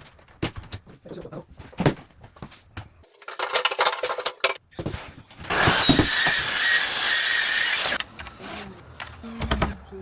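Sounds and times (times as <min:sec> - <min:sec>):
small electric motor running: 0:05.6 - 0:08.0.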